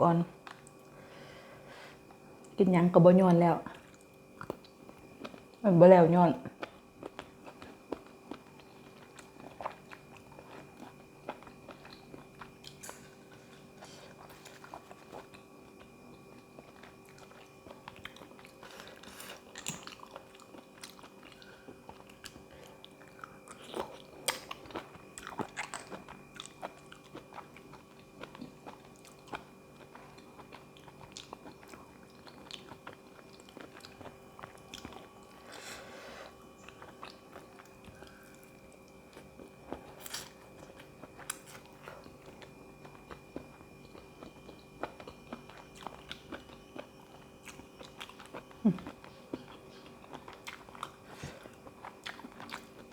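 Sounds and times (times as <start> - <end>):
faint steady hum: 0.0 - 52.9
person chewing and crunching food: 3.7 - 5.6, 6.5 - 52.9.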